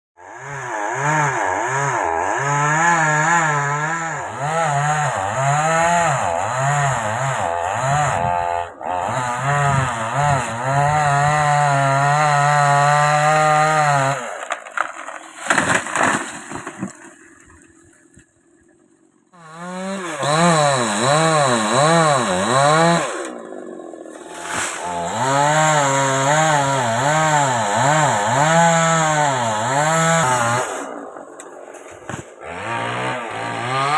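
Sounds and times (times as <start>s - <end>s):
chainsaw cutting wood: 0.2s - 18.2s, 19.3s - 33.9s.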